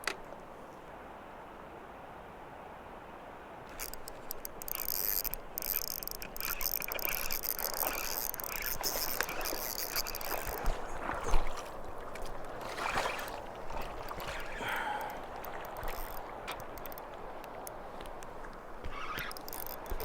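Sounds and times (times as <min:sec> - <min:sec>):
shallow river water flowing: 0:00.0 - 0:20.0
small clicks: 0:03.7 - 0:10.7, 0:15.0 - 0:20.0.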